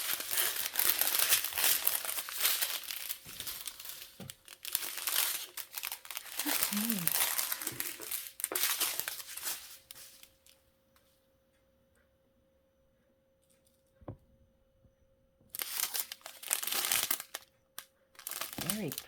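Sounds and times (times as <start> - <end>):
plastic bags crinkling: 0.0 - 10.6, 15.5 - 19.0
faint steady hum: 0.0 - 19.0.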